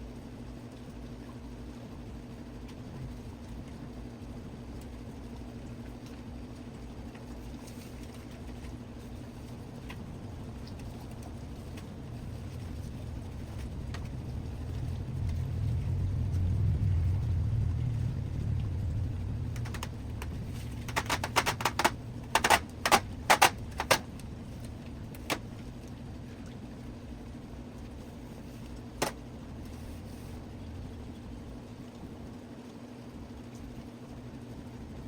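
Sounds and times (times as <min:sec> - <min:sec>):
low rumble: 0:10.0 - 0:32.4
sharp clicks and rattles: 0:19.5 - 0:24.3.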